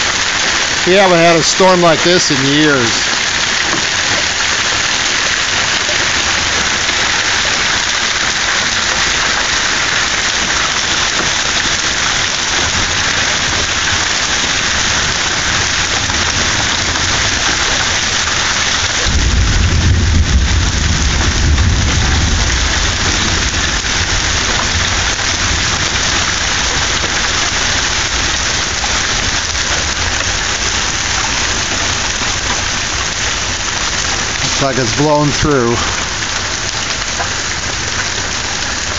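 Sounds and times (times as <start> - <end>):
heavy rain pouring: 0.0 - 38.9
thunder rumbling: 19.0 - 28.3.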